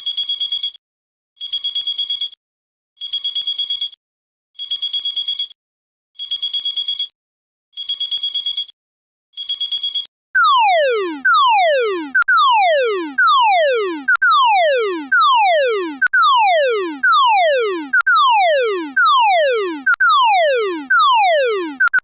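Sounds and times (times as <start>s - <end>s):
falling alarm tone sweep: 10.4s - 22.0s
short high blips: 10.4s - 22.0s.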